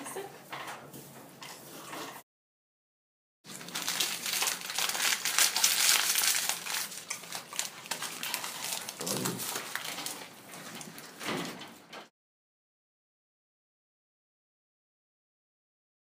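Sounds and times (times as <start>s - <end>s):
chimpanzees chewing and crunching: 3.5s - 11.2s.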